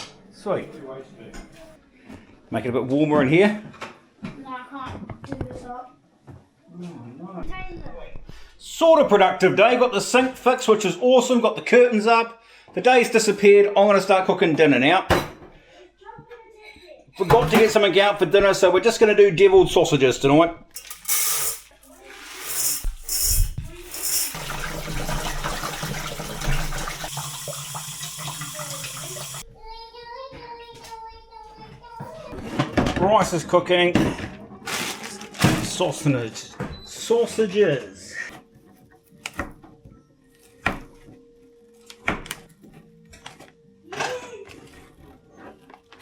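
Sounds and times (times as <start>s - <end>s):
utensils and pots clunking: 17.2s - 18.0s, 20.7s - 27.4s
kitchen tap running into sink: 21.0s - 29.4s.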